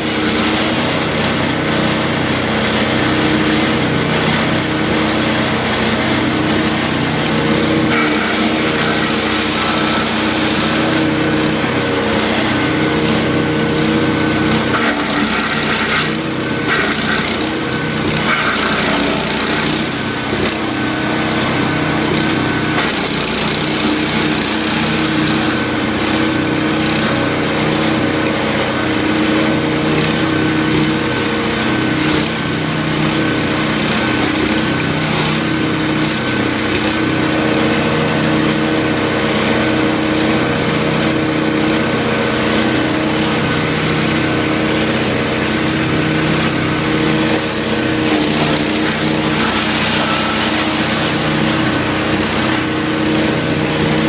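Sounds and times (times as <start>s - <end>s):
rough chipping noise: 0.0s - 27.3s, 30.1s - 37.0s, 45.4s - 54.0s
wood chipper engine running: 0.0s - 54.0s.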